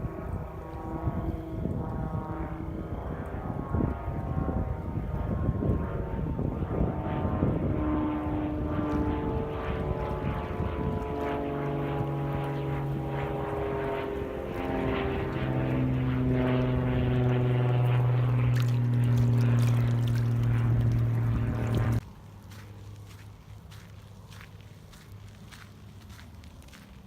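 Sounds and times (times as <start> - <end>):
propeller airplane engine droning: 0.0 - 27.0.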